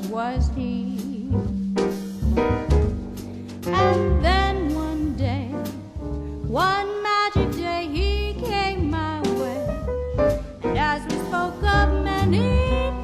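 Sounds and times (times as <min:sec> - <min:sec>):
jazz ballad with keyboard and bass: 0:00.0 - 0:13.0.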